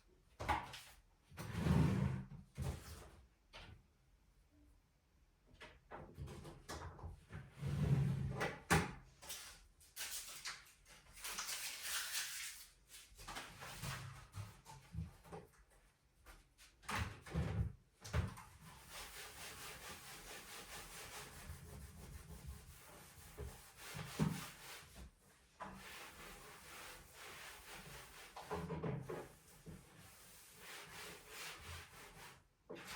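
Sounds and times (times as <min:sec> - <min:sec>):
objects rubbed and wiped: 0:09.2 - 0:15.5, 0:18.4 - 0:32.9.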